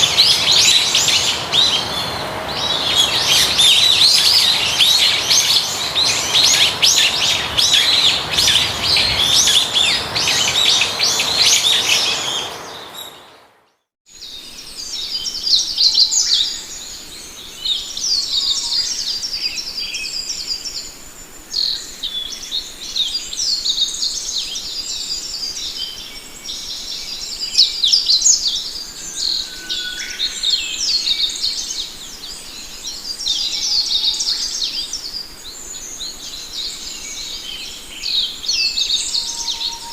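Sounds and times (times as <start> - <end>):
songbirds chirping and singing: 0.0 - 13.4, 27.1 - 39.9
low bird whistle: 28.4 - 31.6, 38.5 - 39.9.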